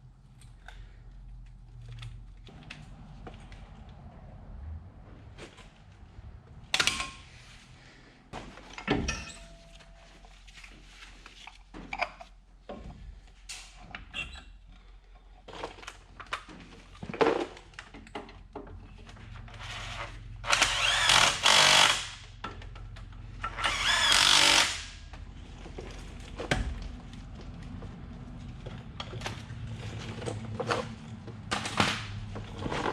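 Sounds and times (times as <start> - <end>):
metal tools clanking: 8.8 - 10.2
power tool running: 23.6 - 25.0.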